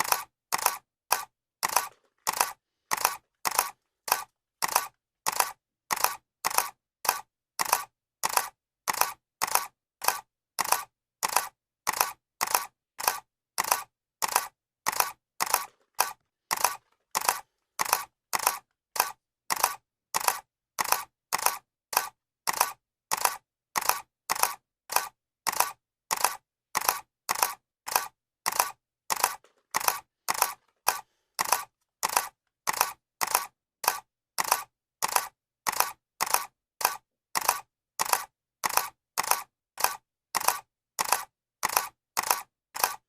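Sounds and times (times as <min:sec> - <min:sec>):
camera shutter clicking: 0:00.0 - 0:43.0.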